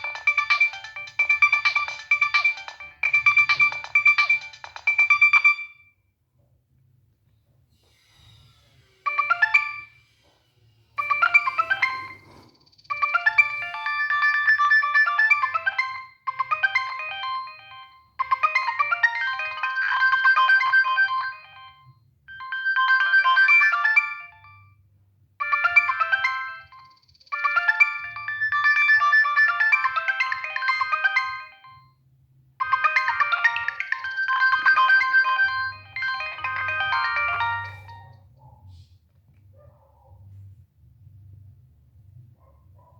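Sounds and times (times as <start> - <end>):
polyphonic ringtone melody: 0.0 - 5.8, 9.1 - 10.1, 11.0 - 24.8, 25.4 - 31.9, 32.6 - 38.2.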